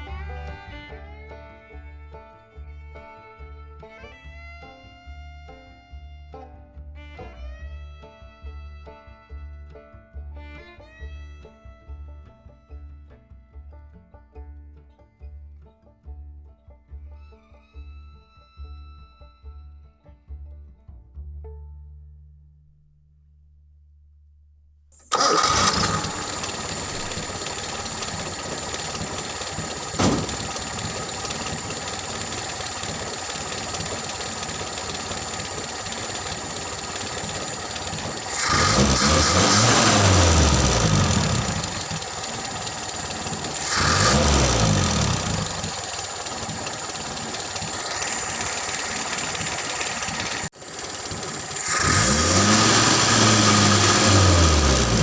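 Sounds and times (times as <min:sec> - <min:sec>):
car engine idling and revving: 0:25.0 - 0:55.0
short knock: 0:30.0 - 0:30.4.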